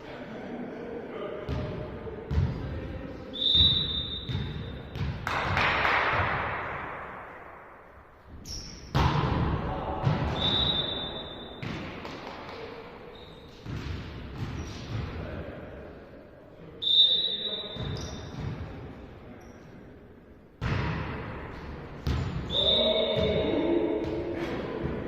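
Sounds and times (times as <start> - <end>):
referee's whistle: 3.3 - 4.8, 10.4 - 11.6, 16.8 - 18.3, 22.5 - 23.7.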